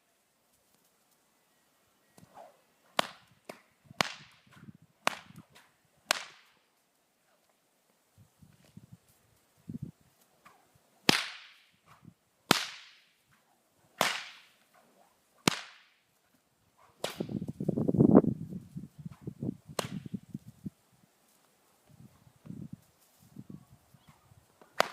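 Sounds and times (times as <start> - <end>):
whip cracking: 2.2 - 6.6, 10.4 - 13.1, 14.0 - 16.0, 16.9 - 17.4, 19.1 - 20.1.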